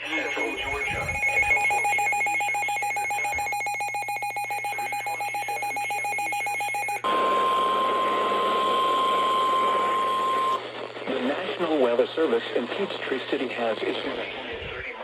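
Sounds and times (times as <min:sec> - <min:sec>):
radio hiss: 0:00.0 - 0:03.4, 0:10.4 - 0:15.0
electronic alert beep: 0:00.0 - 0:07.6
steady warning alarm tone: 0:00.0 - 0:10.6.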